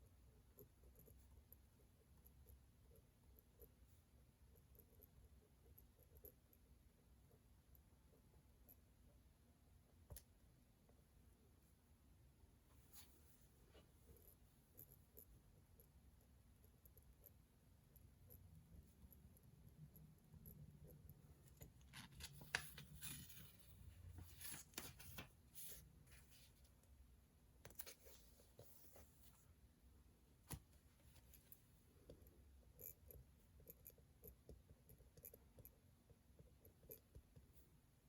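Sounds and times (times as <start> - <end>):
paper rustling: 21.8 - 26.7.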